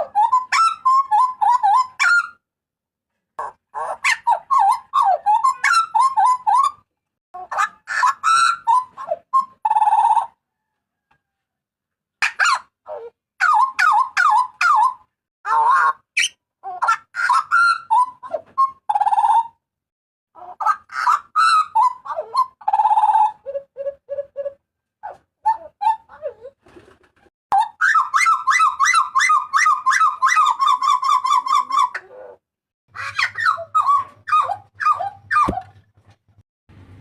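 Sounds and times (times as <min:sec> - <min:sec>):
bird whistling with harsh rasp: 0:33.0 - 0:35.6.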